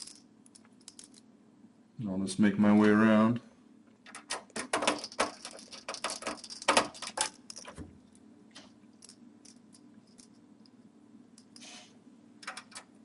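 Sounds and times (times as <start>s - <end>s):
brief metal scrape: 11.6s - 12.0s.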